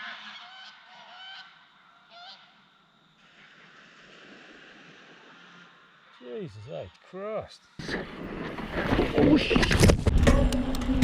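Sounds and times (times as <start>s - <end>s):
geese honking: 0.0s - 2.7s.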